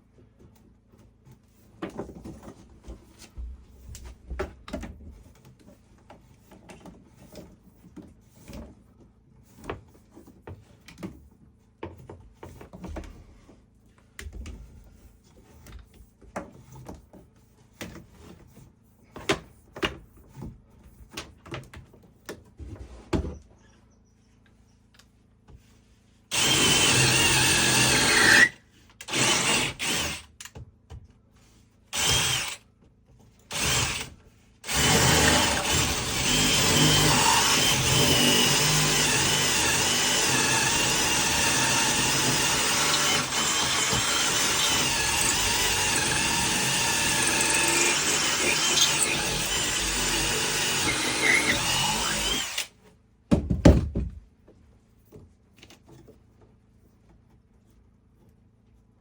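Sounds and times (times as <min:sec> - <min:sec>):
electric drill whining: 0:26.3 - 0:30.2, 0:31.9 - 0:32.6, 0:33.5 - 0:52.7.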